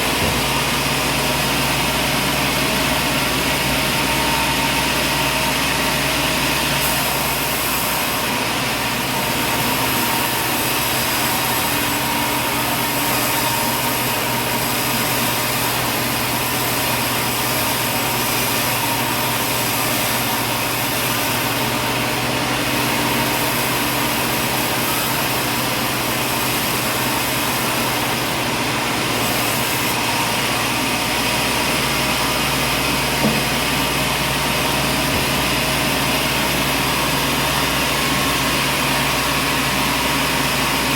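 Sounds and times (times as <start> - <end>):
sawmill machinery droning: 0.0 - 40.9
short knock: 33.2 - 33.6.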